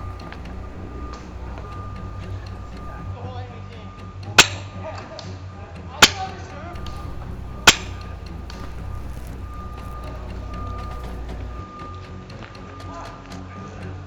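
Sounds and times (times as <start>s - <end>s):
airsoft rifle shots: 0.0s - 3.1s, 6.8s - 11.6s.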